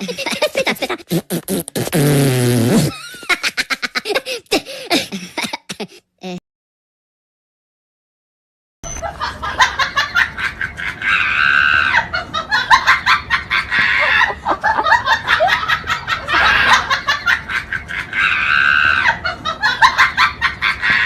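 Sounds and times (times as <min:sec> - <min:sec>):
high-pitched cackling laughter: 0:00.0 - 0:01.1, 0:09.0 - 0:21.0.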